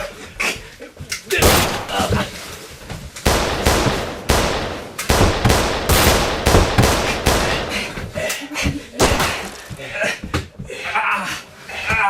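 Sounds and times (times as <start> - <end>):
gunshots: 1.4 - 2.1, 3.2 - 8.0, 9.0 - 9.7.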